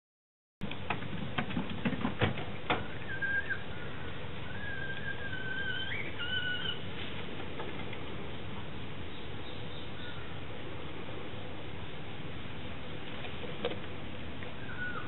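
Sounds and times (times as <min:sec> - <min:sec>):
sharp clicks and knocks: 0:00.6 - 0:02.9, 0:13.1 - 0:14.0
steady background hiss: 0:00.7 - 0:15.0.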